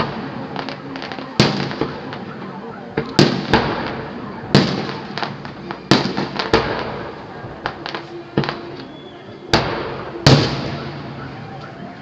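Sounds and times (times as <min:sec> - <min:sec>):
fireworks bangs with rumbling echo: 0:00.0 - 0:08.9, 0:09.5 - 0:11.6.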